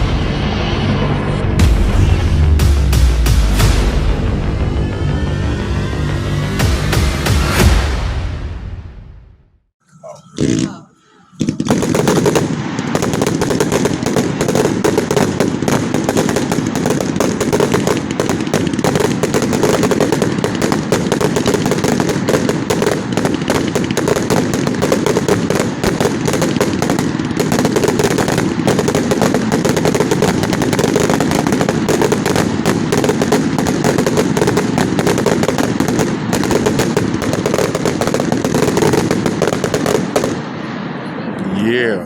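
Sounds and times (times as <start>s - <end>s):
firework cake rapid shots: 10.4s - 40.7s.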